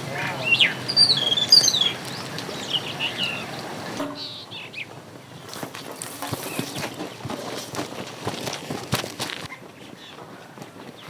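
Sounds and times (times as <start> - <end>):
birds chirping: 0.0 - 7.7.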